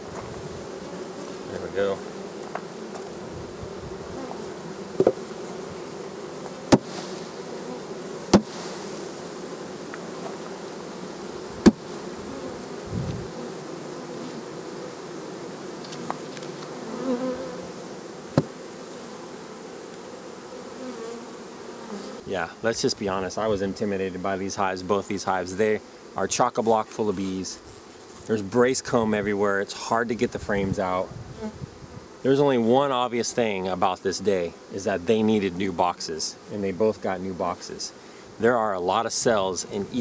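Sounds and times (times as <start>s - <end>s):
honey bees buzzing: 0.0s - 40.0s
wooden hive boxes knocking: 4.9s - 5.3s, 6.4s - 7.1s, 8.3s - 8.6s, 11.6s - 12.1s, 18.3s - 18.6s.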